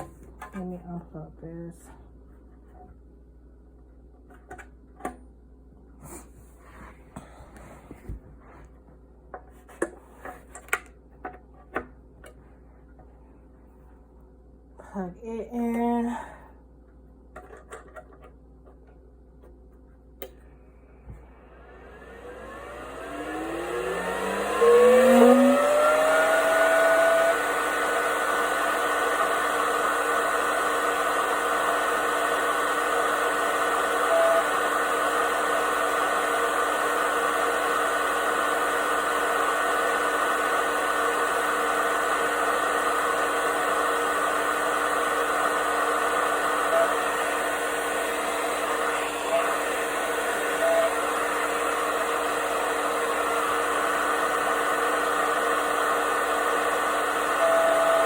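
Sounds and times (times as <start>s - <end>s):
air compressor motor whine: 20.6s - 58.0s.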